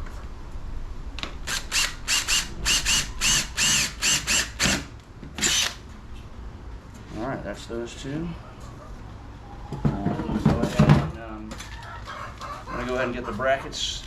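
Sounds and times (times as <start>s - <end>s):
power drill boring through metal: 1.5s - 5.7s.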